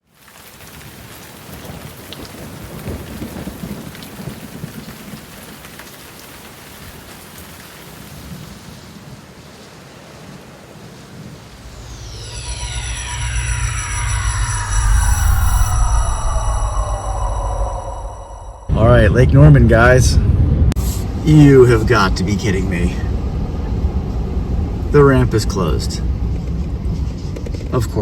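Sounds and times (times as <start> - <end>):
heavy rain: 0.0 - 11.6
falling tones over deep bass: 11.5 - 21.4.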